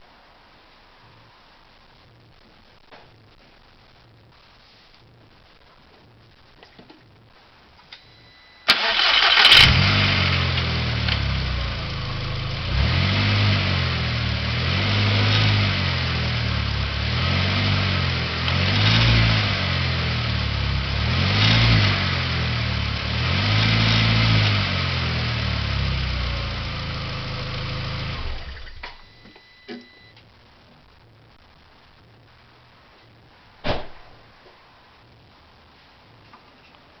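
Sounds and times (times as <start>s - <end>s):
car engine starting and revving: 8.7s - 28.7s.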